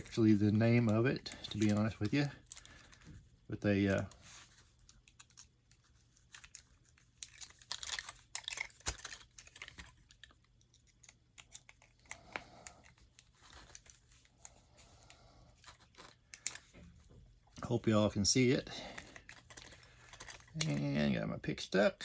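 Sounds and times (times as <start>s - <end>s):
lock pick clicking and scraping: 6.3s - 14.6s, 19.0s - 20.8s.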